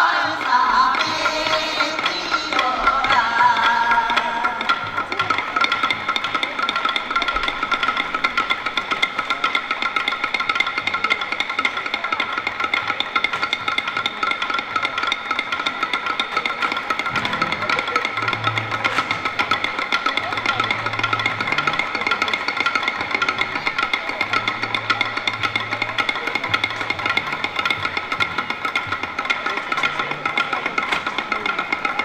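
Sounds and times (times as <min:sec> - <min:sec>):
person singing: 0:00.0 - 0:05.0.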